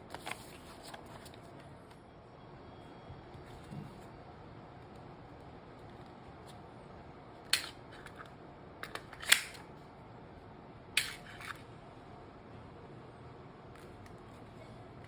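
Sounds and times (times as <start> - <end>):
pistol mechanical clicks: 8.9 - 9.6.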